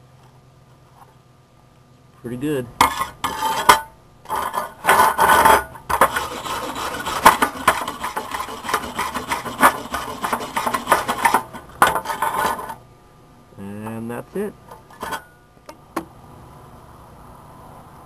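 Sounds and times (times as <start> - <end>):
tool scraping steel weld: 2.8 - 12.8, 14.7 - 15.4.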